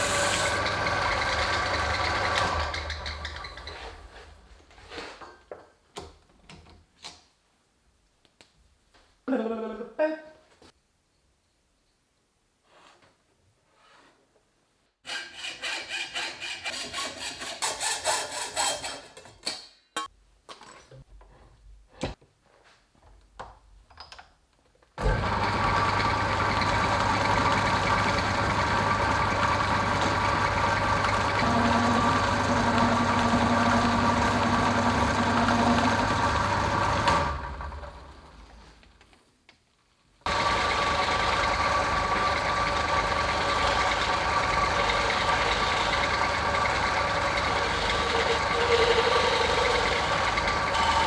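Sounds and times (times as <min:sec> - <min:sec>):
power tool motor humming: 0:00.0 - 0:03.6, 0:29.6 - 0:37.3, 0:40.3 - 0:51.0
hand saw cutting wood: 0:00.0 - 0:04.1, 0:15.0 - 0:19.4, 0:29.3 - 0:37.4, 0:40.3 - 0:51.0.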